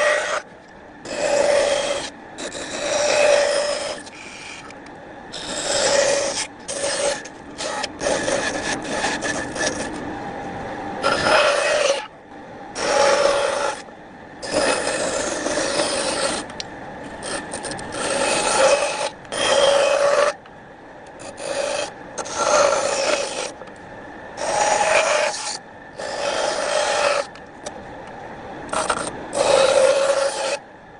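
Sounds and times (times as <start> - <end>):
wood being rasped: 0.0 - 0.4, 1.1 - 4.7, 5.4 - 10.0, 11.0 - 12.1, 12.8 - 13.8, 14.4 - 16.5, 17.2 - 20.4, 21.2 - 23.5, 24.4 - 27.3, 28.7 - 30.6.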